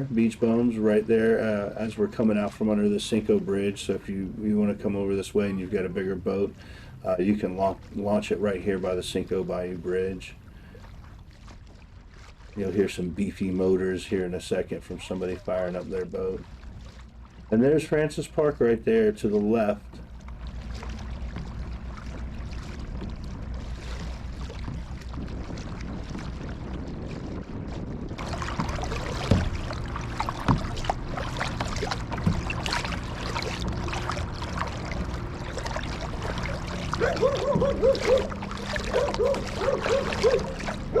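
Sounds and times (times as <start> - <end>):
kayak paddling in water: 0.0 - 41.0
water splashing: 0.0 - 41.0
boat motor idling: 28.2 - 41.0.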